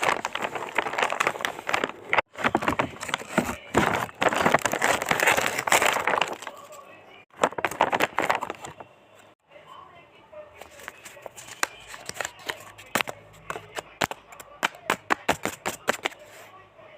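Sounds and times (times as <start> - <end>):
packaging crinkling: 0.0 - 8.9.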